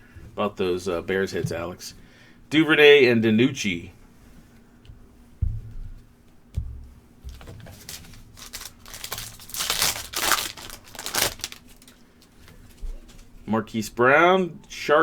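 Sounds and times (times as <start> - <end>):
low thumps: 4.8 - 9.0
wrapper crinkling and tearing: 7.3 - 12.4.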